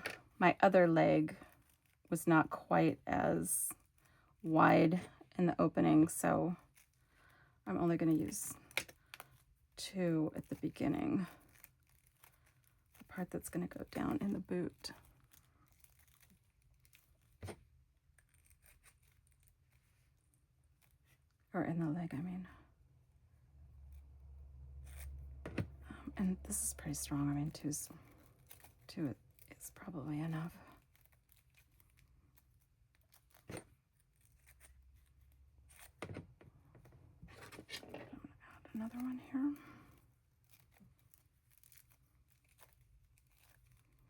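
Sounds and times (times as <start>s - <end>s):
faint handling of doll parts: 0.0s - 44.0s.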